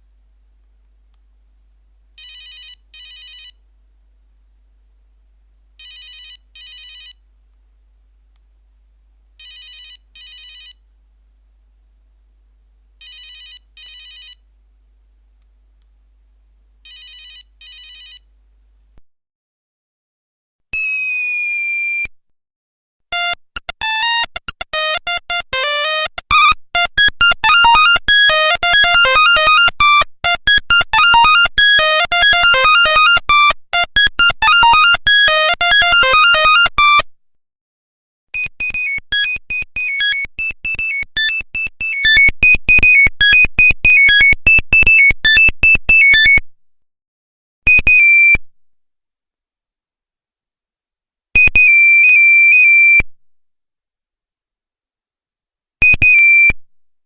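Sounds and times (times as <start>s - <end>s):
beeping monophonic ringtone: 23.2s - 37.0s, 38.7s - 46.4s.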